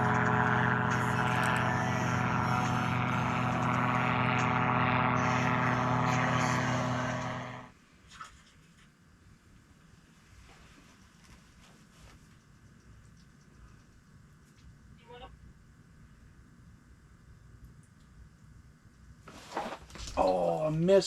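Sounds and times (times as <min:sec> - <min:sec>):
motor running steadily: 0:00.0 - 0:07.7.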